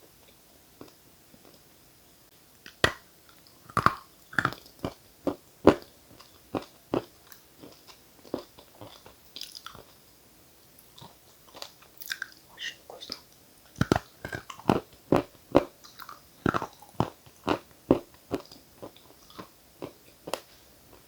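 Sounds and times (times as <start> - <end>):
chalk crunching and chewing: 2.8 - 10.0, 13.0 - 21.0.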